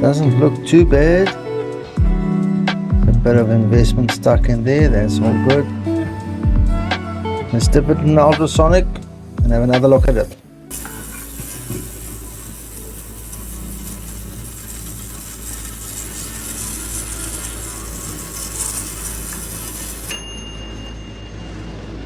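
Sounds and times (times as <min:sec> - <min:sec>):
ultrasonic cleaner humming: 0:10.7 - 0:20.9
steady high tone: 0:19.8 - 0:22.0.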